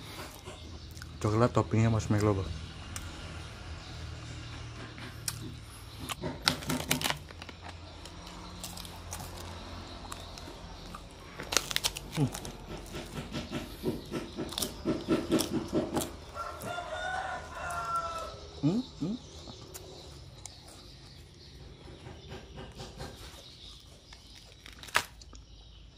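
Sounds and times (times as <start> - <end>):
chickens clucking: 12.2 - 24.1
rooster crowing: 16.0 - 18.8.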